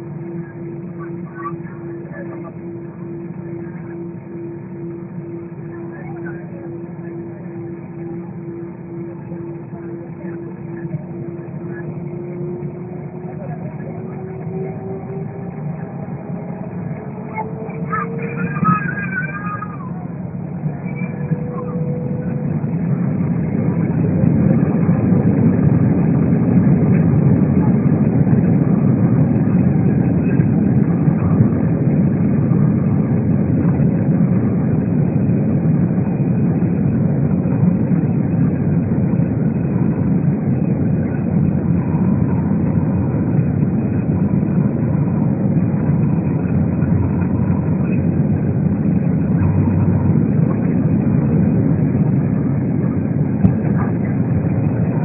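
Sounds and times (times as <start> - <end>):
jet engine roar: 0.0 - 55.0.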